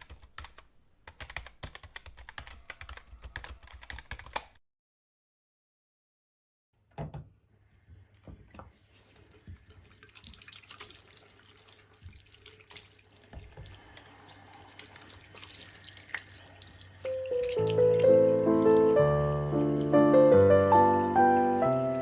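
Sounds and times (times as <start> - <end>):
tap water running into sink: 8.0 - 20.9.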